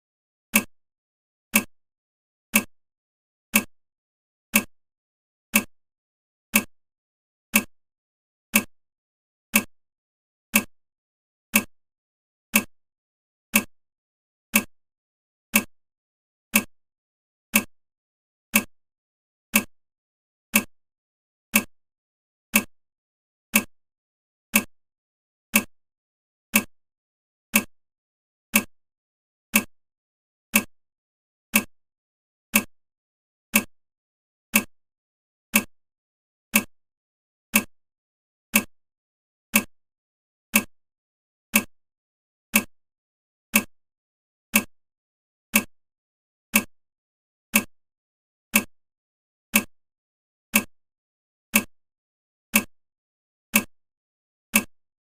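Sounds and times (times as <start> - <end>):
clock ticking: 0.5 - 0.7, 1.5 - 1.7, 2.5 - 2.7, 3.5 - 3.7, 4.5 - 4.7, 5.5 - 5.7, 6.5 - 6.7, 7.5 - 7.7, 8.5 - 8.7, 9.5 - 9.7, 10.5 - 10.7, 11.5 - 11.7, 12.5 - 12.7, 13.5 - 13.7, 14.5 - 14.7, 15.5 - 15.7, 16.5 - 16.7, 17.5 - 17.7, 18.5 - 18.7, 19.5 - 19.7, 20.5 - 20.7, 21.5 - 21.7, 22.5 - 22.7, 23.5 - 23.7, 24.5 - 24.7, 25.5 - 25.7, 26.5 - 26.7, 27.5 - 27.7, 28.5 - 28.7, 29.5 - 29.7, 30.5 - 30.7, 31.5 - 31.7, 32.5 - 32.7, 33.5 - 33.7, 34.5 - 34.7, 35.5 - 35.7, 36.5 - 36.7, 37.5 - 37.7, 38.5 - 38.7, 39.5 - 39.7, 40.5 - 40.7, 41.5 - 41.7, 42.5 - 42.7, 43.5 - 43.7, 44.5 - 44.7, 45.5 - 45.7, 46.5 - 46.7, 47.5 - 47.7, 48.5 - 48.7, 49.5 - 49.7, 50.5 - 50.7, 51.5 - 51.7, 52.5 - 52.7, 54.5 - 54.7.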